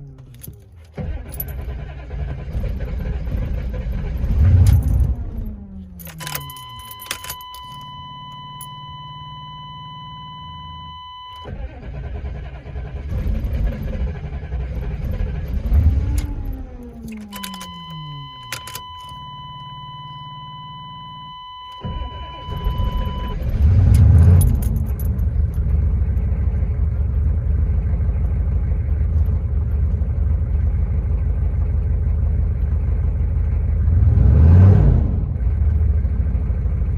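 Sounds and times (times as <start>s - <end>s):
diesel engine revving and idling: 0.0s - 36.9s
warning chime: 6.1s - 11.5s, 17.2s - 23.4s.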